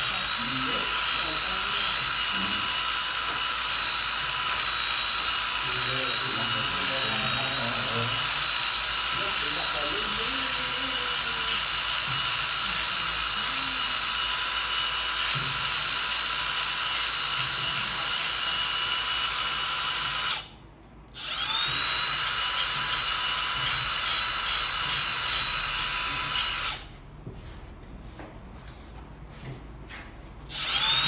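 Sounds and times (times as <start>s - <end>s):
belt sander high whine: 0.0s - 20.4s.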